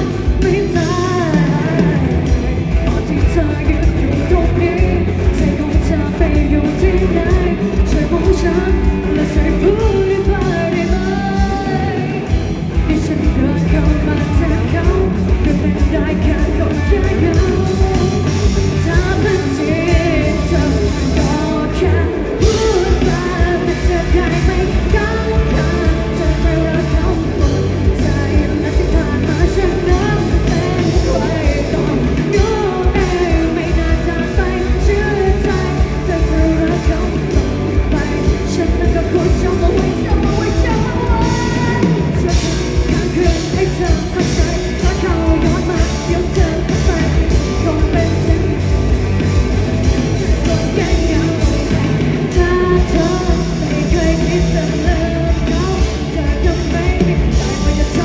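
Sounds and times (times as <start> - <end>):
driving drumbeat: 0.0 - 58.0
lead singer: 0.0 - 58.0
live rock band playing: 0.0 - 58.0.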